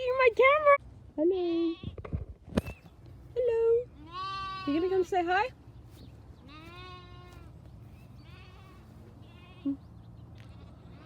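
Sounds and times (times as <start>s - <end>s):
lambs bleating: 4.0s - 5.0s, 6.4s - 7.6s, 8.2s - 9.8s.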